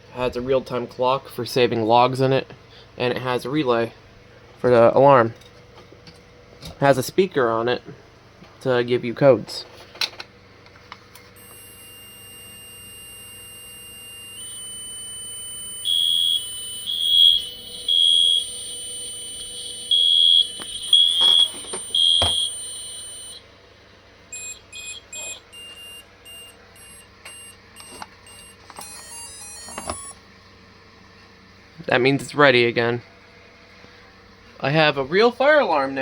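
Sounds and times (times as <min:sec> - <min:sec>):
steady high whine: 0:11.3 - 0:30.7
alarm buzzer beeping: 0:11.4 - 0:23.4, 0:24.3 - 0:30.2
short coded beeps: 0:11.4 - 0:23.4, 0:24.3 - 0:30.2
stepped tones: 0:11.4 - 0:23.4, 0:24.3 - 0:30.2
clicks: 0:20.4 - 0:23.4, 0:24.4 - 0:30.2.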